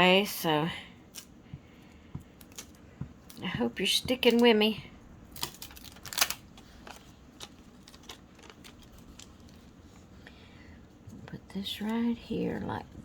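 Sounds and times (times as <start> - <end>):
faint taps and crinkles: 1.2 - 10.1
paper rustling: 5.4 - 10.0.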